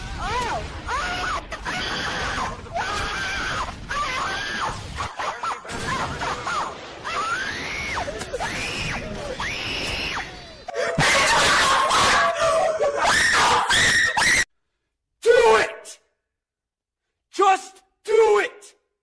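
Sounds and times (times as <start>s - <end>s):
loud harsh scream: 7.1s - 14.5s
short high screams: 7.1s - 14.5s.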